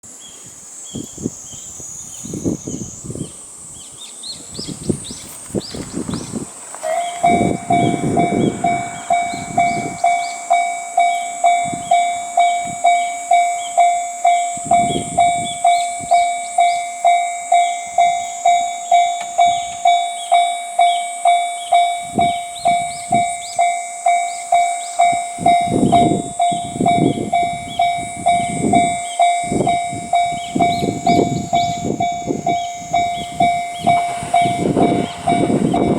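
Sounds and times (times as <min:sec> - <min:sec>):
low rumbling: 0:06.4 - 0:12.1
electronic crossing bell ringing: 0:06.8 - 0:35.9.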